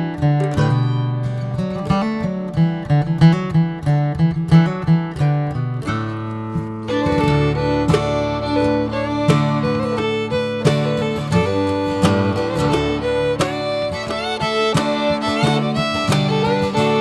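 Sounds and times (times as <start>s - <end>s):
acoustic guitar: 0.0s - 17.0s
fiddle playing bluegrass melody: 6.4s - 17.0s.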